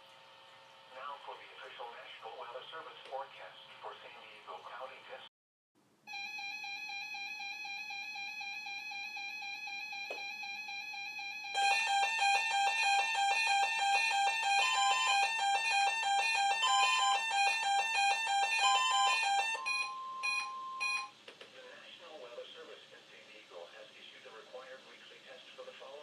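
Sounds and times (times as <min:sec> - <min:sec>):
steady electronic alert tone: 0:10.1 - 0:21.1
rapid electronic beeps: 0:11.6 - 0:21.1.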